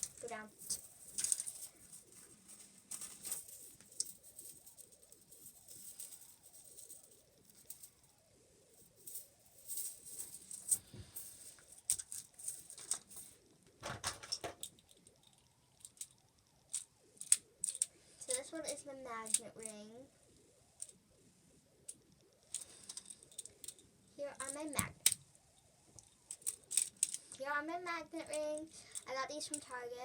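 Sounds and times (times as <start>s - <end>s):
plastic toys clicking and rustling: 0.0s - 8.1s, 8.8s - 19.8s, 21.9s - 25.2s, 26.0s - 27.4s, 28.2s - 29.9s.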